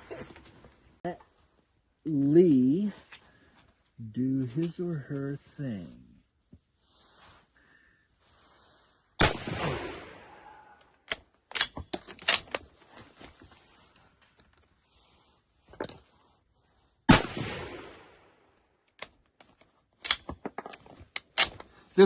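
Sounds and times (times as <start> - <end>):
rifle shots: 9.2 - 10.4, 17.1 - 18.2
metallic rifle bolt clacks: 11.1 - 12.7, 18.9 - 21.7.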